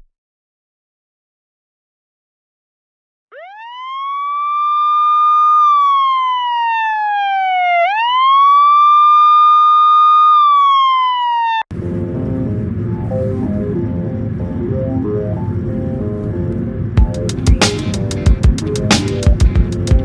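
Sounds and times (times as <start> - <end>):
wailing siren: 3.3 - 17.6
electronic music with steady pulse: 11.7 - 20.0.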